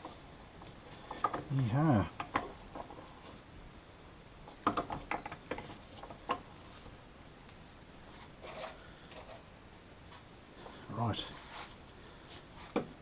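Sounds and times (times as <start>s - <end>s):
soft metal scrape: 8.1s - 9.4s, 11.2s - 11.8s.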